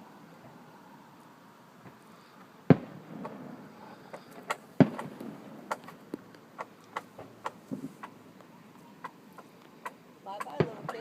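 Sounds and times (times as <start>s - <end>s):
firework shells booming: 2.6s - 7.9s, 10.4s - 11.0s
sharp firework pops: 2.6s - 7.9s, 10.4s - 11.0s.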